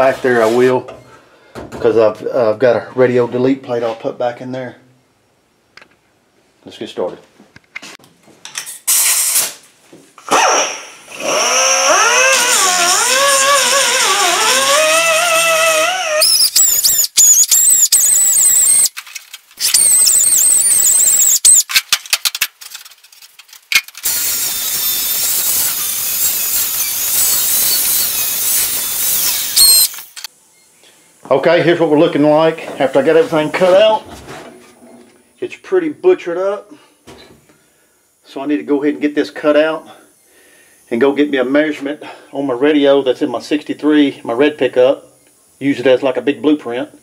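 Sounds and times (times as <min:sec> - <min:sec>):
power tool squeal: 0:10.4 - 0:18.9, 0:19.6 - 0:21.6, 0:24.0 - 0:30.7
grinding hiss: 0:23.3 - 0:30.3.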